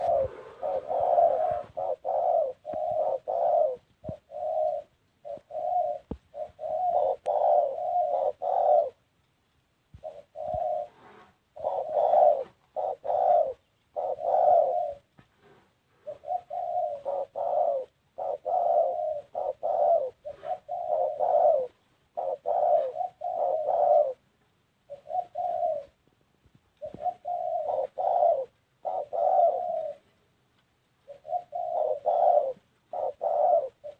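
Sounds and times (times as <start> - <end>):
dove cooing: 0.0 - 9.1, 9.9 - 30.3, 30.9 - 33.9.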